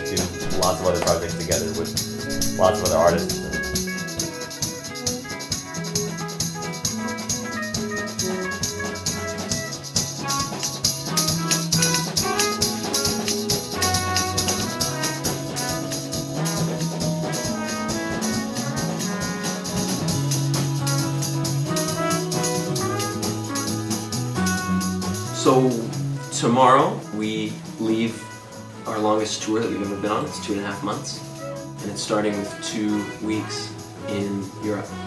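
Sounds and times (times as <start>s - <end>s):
drum kit cymbal strokes: 0.0s - 29.0s
horn lines: 0.0s - 35.0s
jazz fusion band playing: 0.0s - 35.0s
keyboard: 0.0s - 35.0s
bass line: 0.3s - 4.5s.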